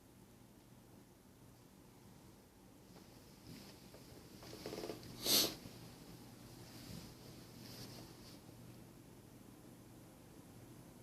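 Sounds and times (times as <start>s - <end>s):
faint soft rustles: 2.8s - 8.8s.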